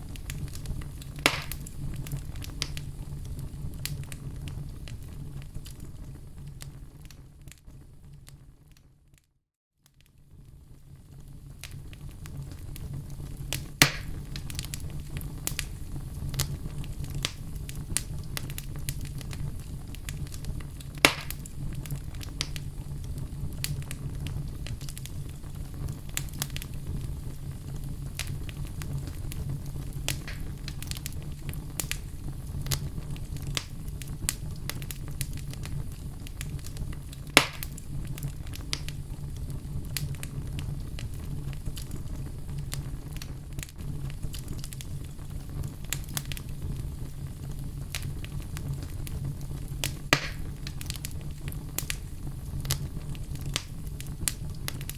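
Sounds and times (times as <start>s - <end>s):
loud sharp fire pops: 0.0s - 7.2s, 11.3s - 54.9s
fire rumbling and crackling: 0.0s - 9.2s, 9.8s - 54.9s.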